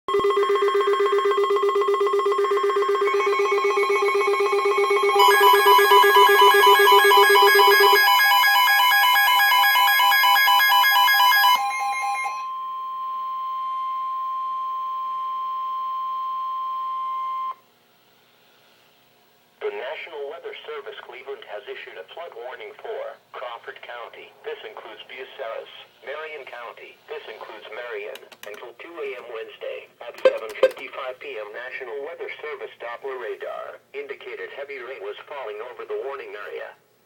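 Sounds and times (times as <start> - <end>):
steady alarm tone: 0.1 - 17.6
pulsing electronic alert tones: 0.2 - 8.0.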